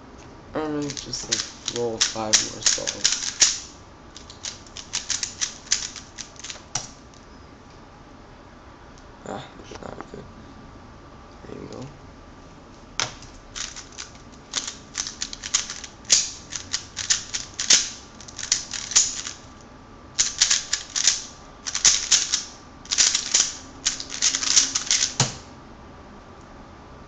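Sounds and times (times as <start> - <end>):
puzzle cube plastic clicking: 0.8 - 7.0, 13.6 - 19.4, 20.2 - 25.4.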